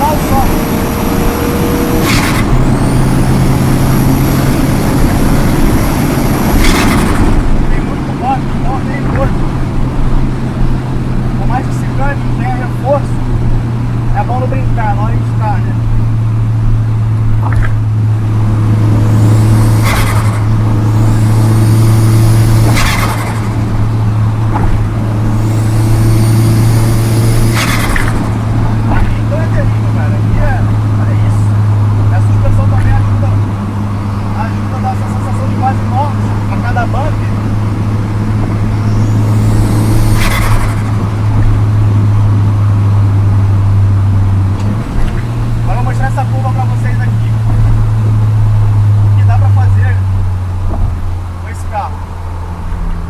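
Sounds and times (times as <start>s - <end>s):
car engine drone: 0.0s - 53.0s
turbo flutter: 18.8s - 29.7s, 38.2s - 41.8s
high rising whistle: 38.7s - 40.7s.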